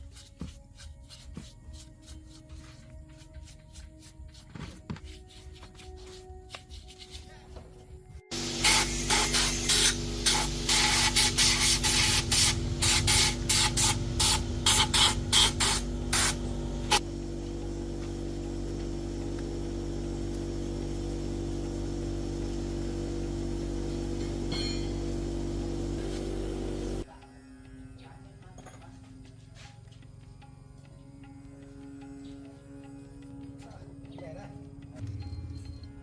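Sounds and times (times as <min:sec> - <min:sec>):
compressed air gun hissing: 0:08.3 - 0:17.0
steady machine hum: 0:08.3 - 0:27.1.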